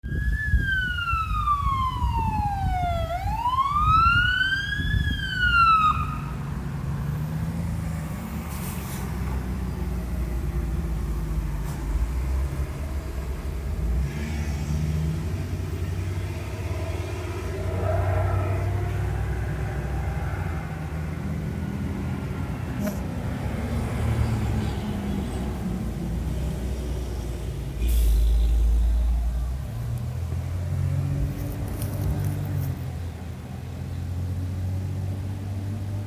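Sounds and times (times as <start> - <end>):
fire truck siren: 0.0 - 14.0, 15.3 - 30.0
truck engine rumbling: 0.0 - 36.0.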